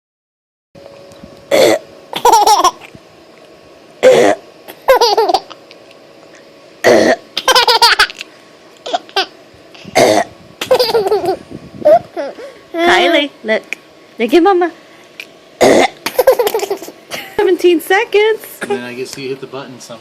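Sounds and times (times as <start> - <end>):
baby girl laughing: 2.2 - 2.9, 4.7 - 5.6, 7.4 - 8.2, 8.8 - 9.3, 10.6 - 12.5, 16.0 - 17.0
woman fake burping: 4.0 - 4.4, 6.8 - 7.2, 10.0 - 10.3, 15.6 - 16.0.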